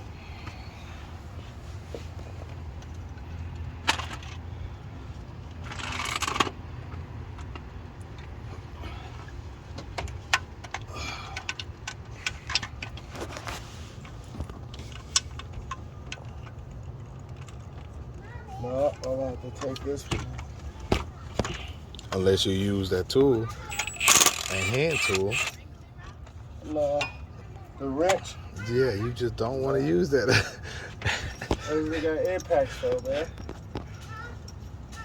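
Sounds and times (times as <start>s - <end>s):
scraping rustle: 12.2s - 15.4s
metal tools clicking and clinking: 23.4s - 27.3s, 30.3s - 35.0s.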